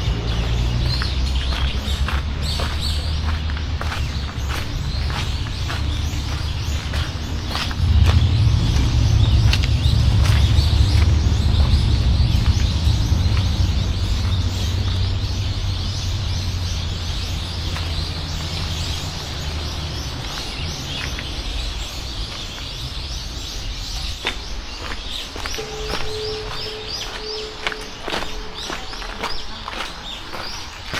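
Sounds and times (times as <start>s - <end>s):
low rumble: 0.0s - 21.8s
birds chirping: 0.0s - 30.9s.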